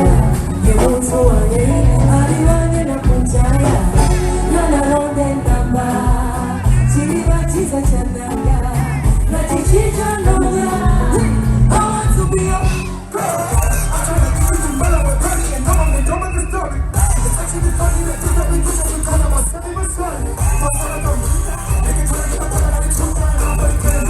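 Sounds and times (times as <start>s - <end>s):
pop song with singer: 0.0s - 24.0s
heavy beat: 11.6s - 24.0s.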